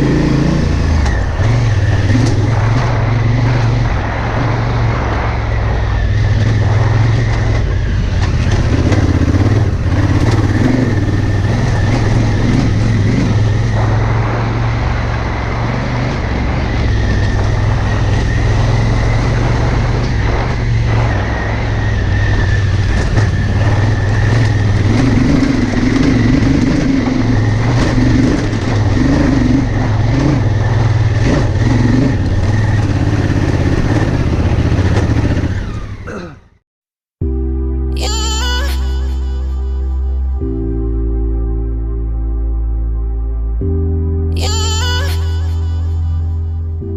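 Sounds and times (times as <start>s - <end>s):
rushing wind noise: 0.0s - 35.5s
motorcycle engine running: 0.0s - 35.9s.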